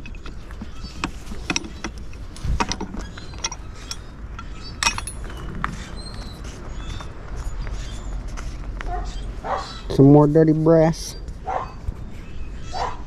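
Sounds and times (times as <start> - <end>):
scrap metal clinking: 0.0 - 5.4
sharp metal clanks: 1.0 - 5.5.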